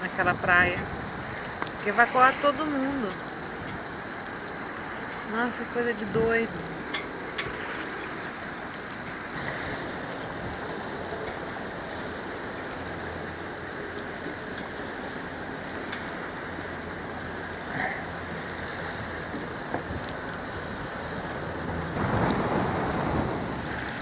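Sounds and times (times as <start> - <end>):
surf: 0.0 - 24.0
wind: 0.0 - 24.0.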